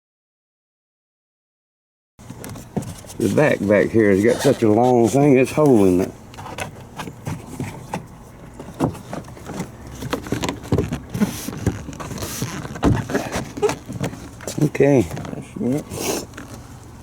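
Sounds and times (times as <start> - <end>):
scraping rustles: 2.2 - 17.0
van door panel clicks and knocks: 12.8 - 14.5.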